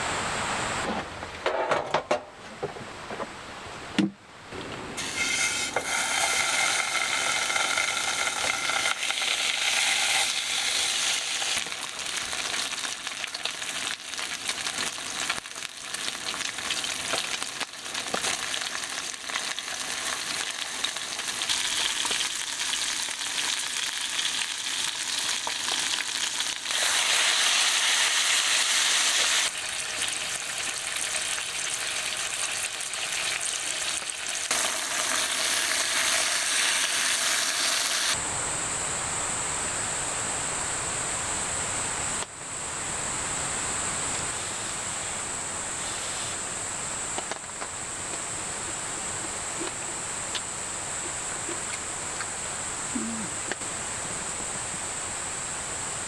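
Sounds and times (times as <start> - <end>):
food sizzling in a pan: 5.0 - 38.2.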